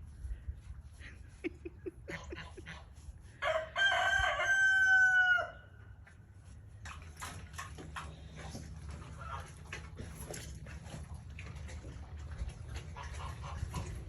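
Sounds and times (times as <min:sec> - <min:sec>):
rooster crowing: 0:03.4 - 0:05.7
low clucks: 0:06.8 - 0:14.0.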